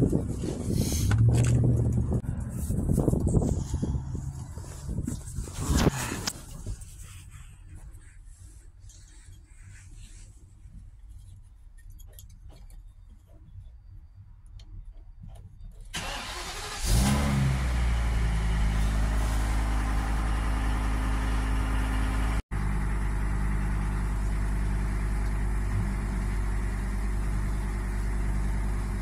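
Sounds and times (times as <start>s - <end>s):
car engine starting and idling: 0.1s - 7.0s, 14.6s - 29.0s.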